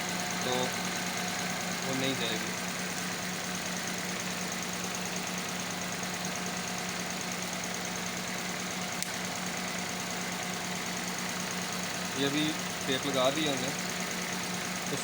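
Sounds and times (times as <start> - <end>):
car engine idling with misfire: 0.0 - 15.0
sharp click: 9.0 - 9.2.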